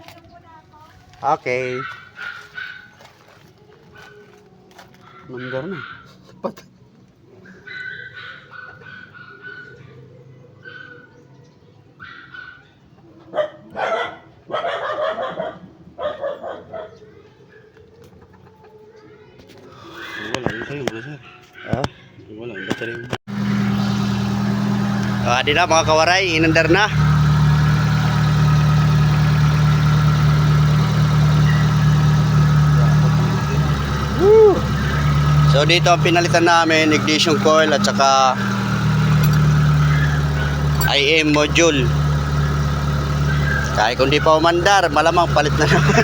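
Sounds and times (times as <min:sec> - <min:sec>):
dog barking loudly: 0:01.7 - 0:03.0, 0:05.2 - 0:06.1, 0:13.3 - 0:16.9
dog yelping: 0:01.7 - 0:03.0, 0:05.0 - 0:06.1, 0:07.5 - 0:09.9, 0:12.0 - 0:16.9
car engine idling: 0:23.3 - 0:46.0.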